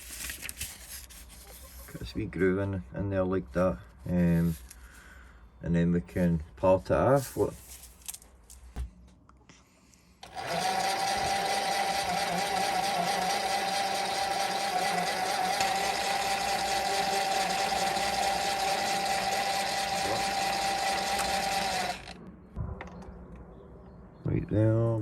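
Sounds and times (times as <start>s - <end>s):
lathe motor whine: 10.2s - 22.2s.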